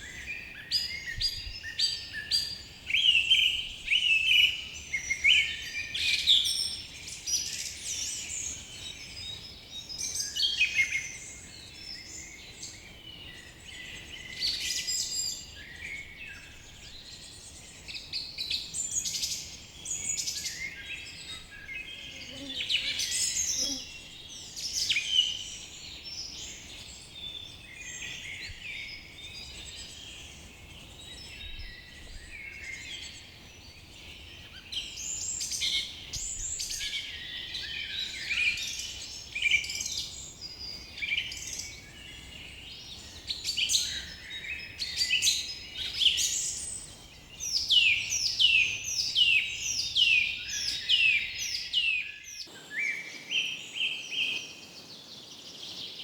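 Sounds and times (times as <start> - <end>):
songbirds chirping and trilling: 0.0 - 56.0.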